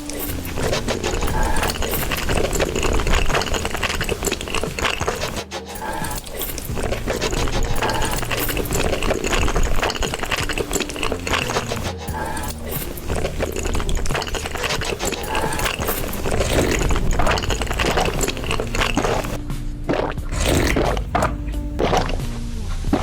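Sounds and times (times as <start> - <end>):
background music: 0.0 - 23.0
chewing and crunching food: 0.0 - 23.0.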